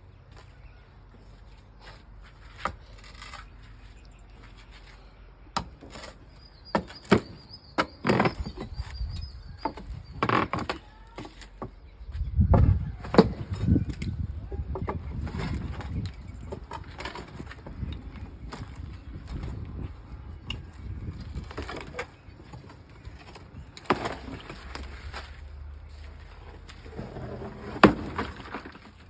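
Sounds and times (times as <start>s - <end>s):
wooden formwork knocking and clattering: 26.5s - 29.0s.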